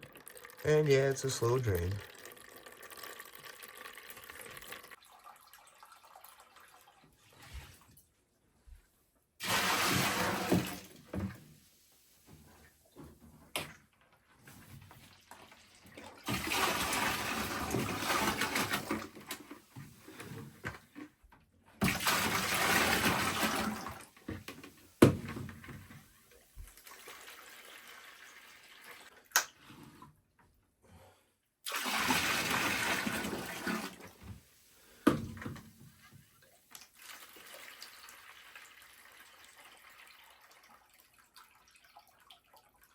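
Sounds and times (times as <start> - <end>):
water gushing into a bucket: 0.0 - 7.7, 9.4 - 11.4, 15.0 - 20.7, 21.8 - 25.9, 26.6 - 29.2, 31.6 - 34.5, 36.3 - 42.9.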